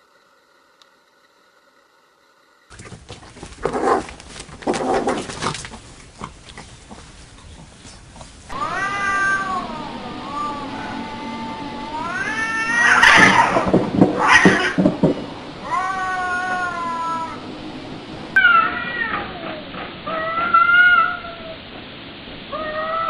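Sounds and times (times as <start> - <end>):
cat crying harshly: 8.5 - 14.9, 15.6 - 17.4, 18.4 - 21.6, 22.5 - 23.0
cat meowing: 8.5 - 14.9, 15.6 - 17.4, 18.4 - 21.6, 22.5 - 23.0.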